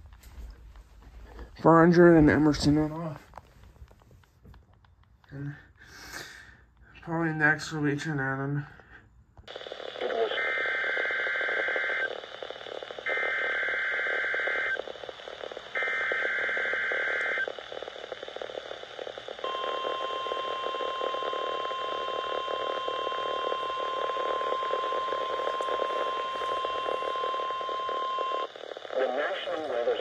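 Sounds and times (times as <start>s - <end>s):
steady warning alarm tone: 9.5s - 30.0s.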